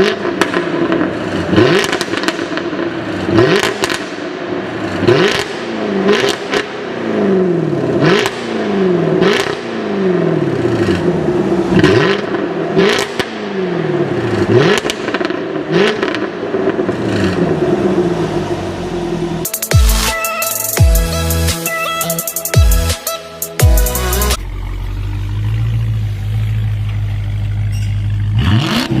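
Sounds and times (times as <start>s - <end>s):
car engine revving: 0.0s - 20.1s, 20.7s - 29.0s
exhaust cracking: 0.0s - 20.1s, 23.6s - 29.0s.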